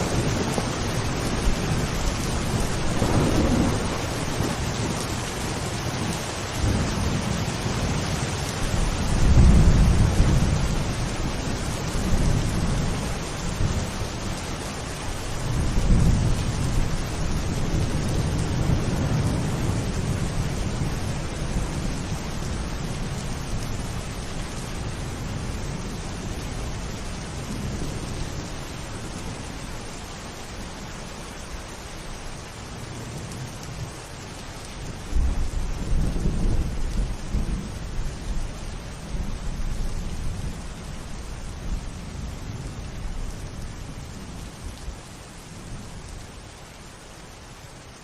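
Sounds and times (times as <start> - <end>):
thunder rumbling: 0.0 - 14.3, 15.2 - 29.5, 34.9 - 44.6
steady rain falling: 0.0 - 48.0.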